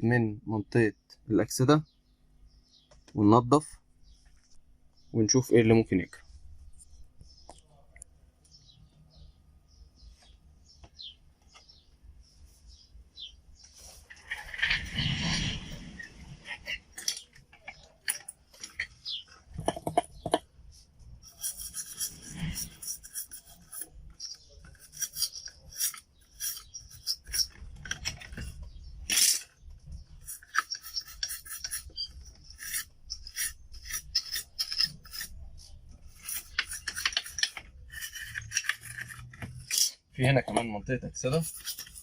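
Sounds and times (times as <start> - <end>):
scraping strokes on circuit board: 13.7 - 17.2, 21.2 - 29.4, 30.0 - 39.9, 41.2 - 42.0.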